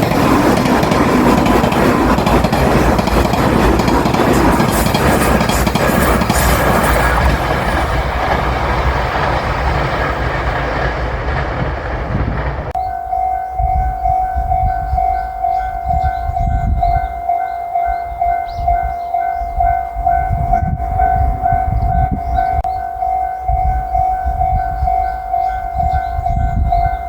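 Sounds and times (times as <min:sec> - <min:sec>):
level crossing warning bell: 0:12.8 - 0:27.0.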